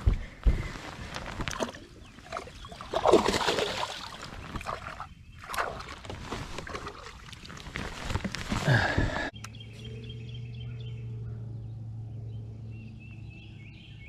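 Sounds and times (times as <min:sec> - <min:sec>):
water sloshing and splashing: 0:00.8 - 0:08.7.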